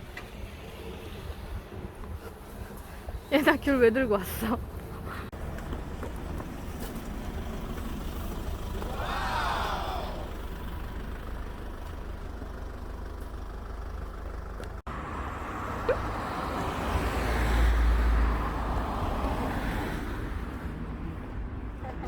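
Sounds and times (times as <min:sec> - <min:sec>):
wind buffeting microphone: 0:00.0 - 0:05.4
road traffic rumble: 0:00.0 - 0:22.0
vehicle passing: 0:04.8 - 0:21.4.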